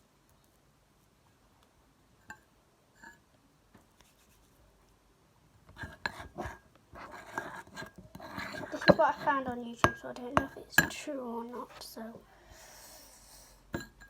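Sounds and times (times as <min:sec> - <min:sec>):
spoon scraping a container: 0:05.8 - 0:11.0.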